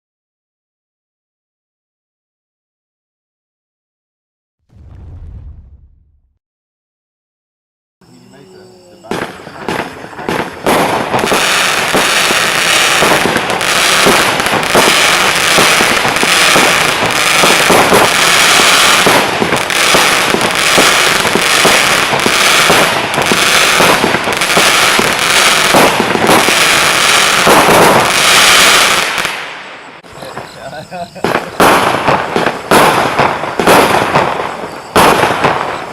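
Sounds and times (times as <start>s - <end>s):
fireworks battery firing: 9.0s - 35.9s.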